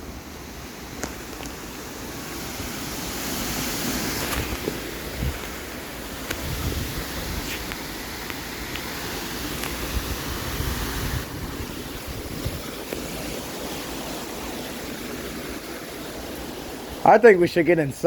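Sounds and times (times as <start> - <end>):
strong gusty wind: 0.0 - 17.2
wind buffeting microphone: 4.2 - 8.0, 9.6 - 17.0.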